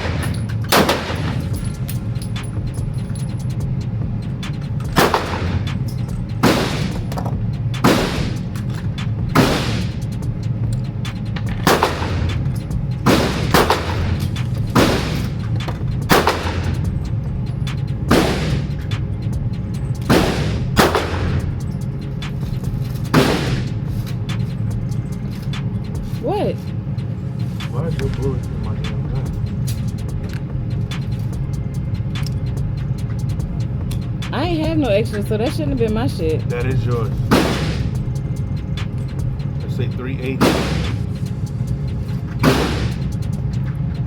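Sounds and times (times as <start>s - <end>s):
pistol shots ringing indoors: 0.0s - 1.4s, 5.0s - 5.5s, 16.1s - 16.8s
low rumble: 0.0s - 44.0s.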